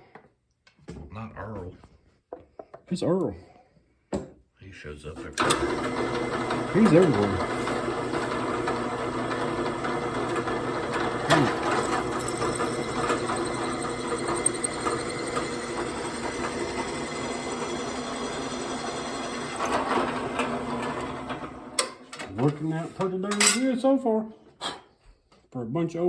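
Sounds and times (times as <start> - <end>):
electric drill drilling metal: 5.4 - 21.9.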